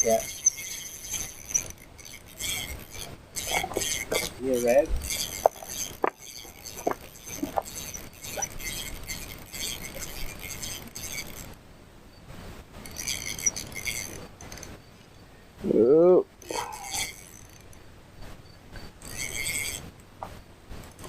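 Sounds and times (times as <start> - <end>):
metallic clinks: 0.0 - 11.5
fishing reel clicking: 0.0 - 11.6, 12.8 - 14.7, 16.4 - 17.8, 19.0 - 19.8.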